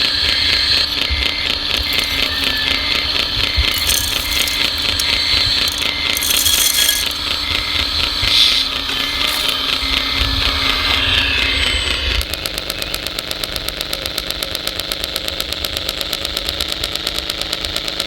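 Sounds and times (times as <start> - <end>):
small motors ticking and humming: 1.6 - 12.3.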